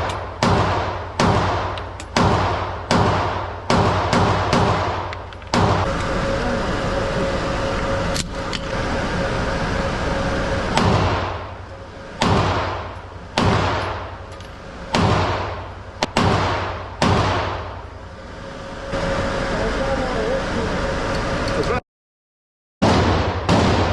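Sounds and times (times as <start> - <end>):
gunshots with echo: 0.0 - 5.9, 12.2 - 14.2, 14.9 - 17.8, 22.8 - 23.9.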